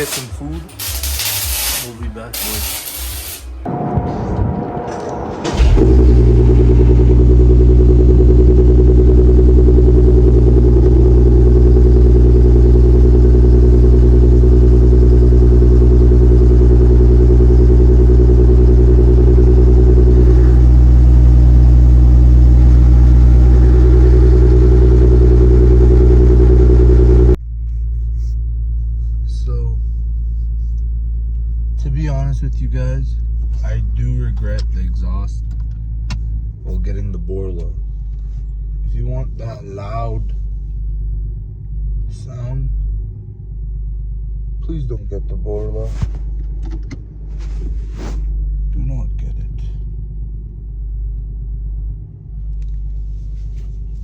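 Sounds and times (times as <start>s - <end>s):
car engine running loud: 3.7s - 27.4s.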